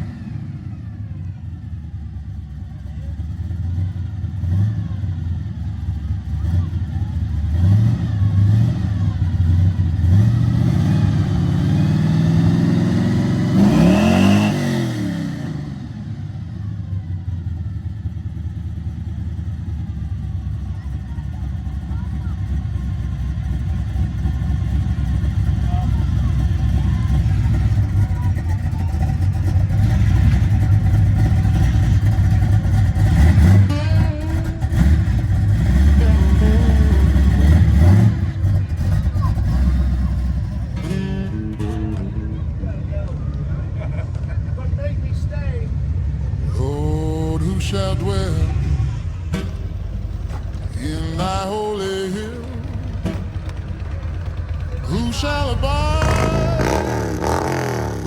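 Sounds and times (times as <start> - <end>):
car engine running: 0.0 - 14.3, 15.4 - 58.0
vehicle passing by: 45.6 - 58.0.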